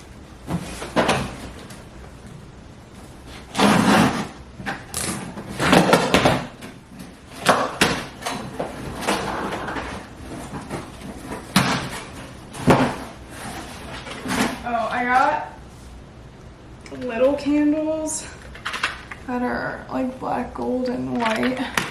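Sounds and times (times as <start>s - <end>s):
packages rustling and scraping: 0.0s - 16.0s.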